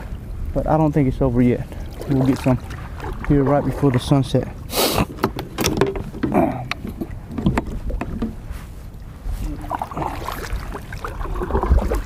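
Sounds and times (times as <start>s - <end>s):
paddle strokes splashing water: 1.5s - 12.0s.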